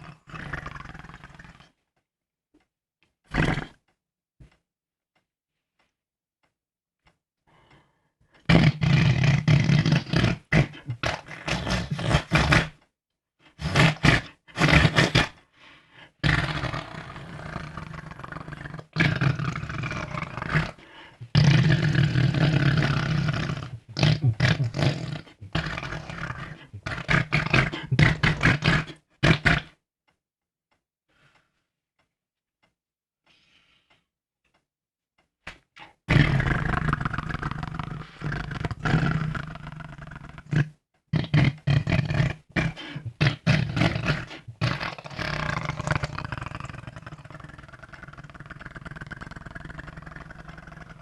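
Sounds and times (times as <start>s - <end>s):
person making fart noises: 3.3s - 3.9s, 8.4s - 12.8s, 13.6s - 15.4s, 16.2s - 29.8s, 35.8s - 51.0s.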